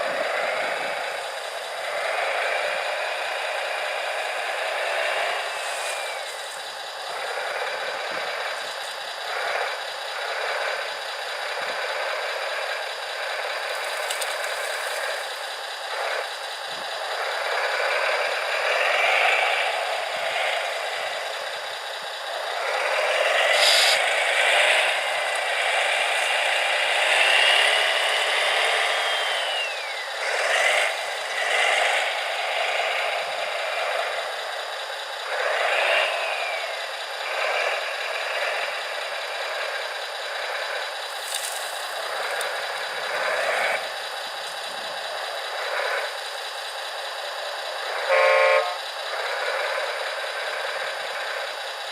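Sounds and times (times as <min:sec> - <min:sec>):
small electric motors whining: 0:00.0 - 0:09.8, 0:11.5 - 0:51.5.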